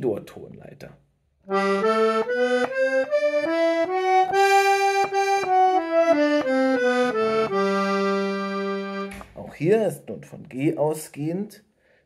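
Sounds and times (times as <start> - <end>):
accordion playing a scale: 1.5 - 9.2.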